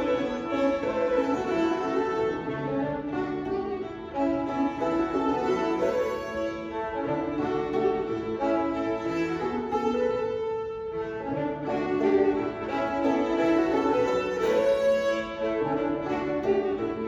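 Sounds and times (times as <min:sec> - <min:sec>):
banjo playing: 0:00.0 - 0:17.0
fiddles bowing a melody: 0:00.0 - 0:17.0.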